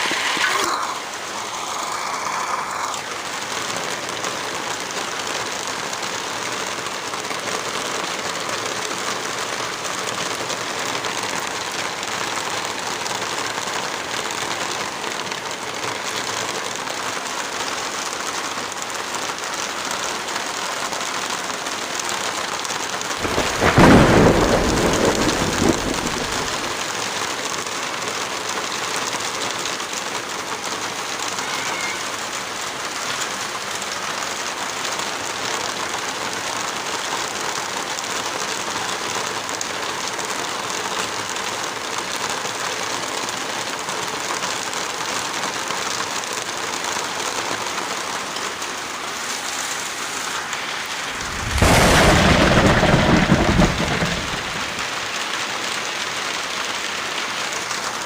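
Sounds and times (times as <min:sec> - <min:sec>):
heavy rain: 0:00.0 - 0:58.0
thunder rumbling: 0:23.2 - 0:26.8, 0:51.0 - 0:55.2.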